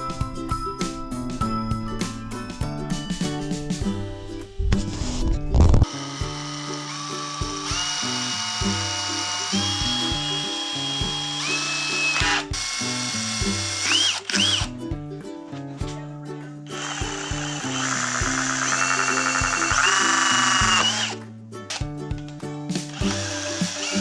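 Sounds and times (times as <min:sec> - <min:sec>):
background music: 0:00.0 - 0:24.0
electric drill motor whine: 0:05.9 - 0:14.6, 0:17.8 - 0:21.1, 0:23.0 - 0:24.0.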